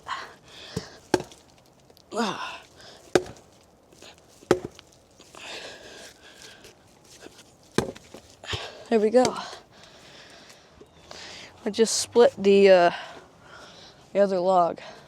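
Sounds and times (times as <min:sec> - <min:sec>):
log splitting: 0:00.5 - 0:10.0
axe chopping log: 0:00.7 - 0:01.5, 0:03.0 - 0:03.6, 0:04.4 - 0:05.0, 0:07.7 - 0:09.6.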